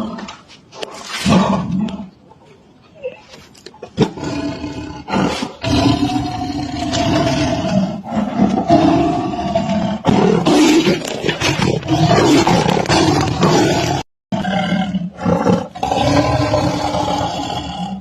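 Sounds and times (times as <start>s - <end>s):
big cats roaring: 4.0s - 18.0s.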